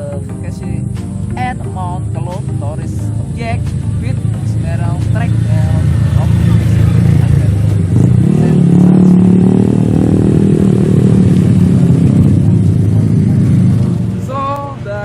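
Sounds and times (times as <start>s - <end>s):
vehicle engine running loudly: 0.0s - 15.0s.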